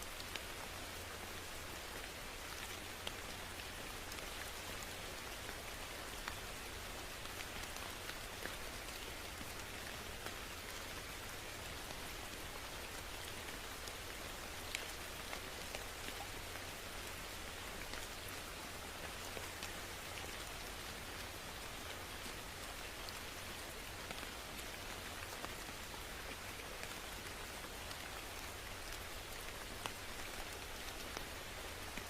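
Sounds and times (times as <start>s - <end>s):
raindrops ticking on a surface: 0.0s - 32.0s
steady rain falling: 0.0s - 32.0s.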